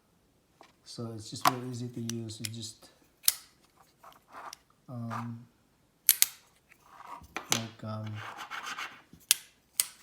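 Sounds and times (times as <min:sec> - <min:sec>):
magnet scratching across surface: 0:03.7 - 0:05.4, 0:06.7 - 0:09.1.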